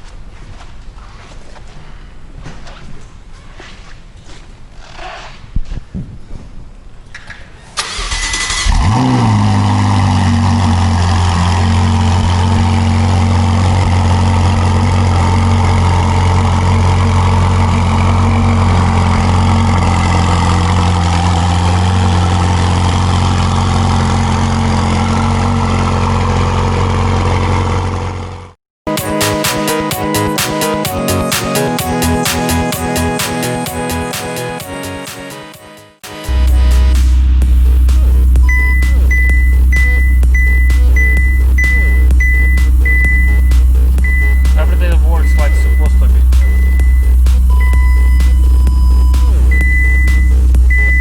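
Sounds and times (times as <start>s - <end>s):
engine starter cranking: 7.8s - 9.4s
car engine revving and idling: 7.9s - 28.6s, 36.3s - 51.0s.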